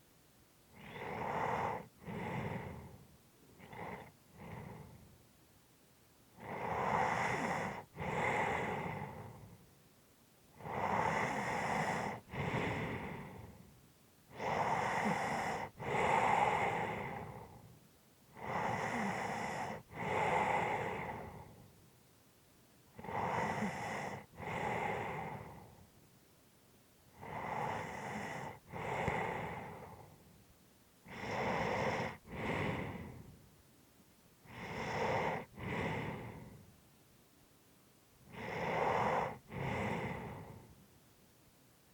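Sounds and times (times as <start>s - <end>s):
person breathing heavily: 0.8s - 3.0s, 10.6s - 13.7s, 18.4s - 21.6s, 27.2s - 30.3s, 31.1s - 33.4s, 34.5s - 36.7s, 38.3s - 40.8s.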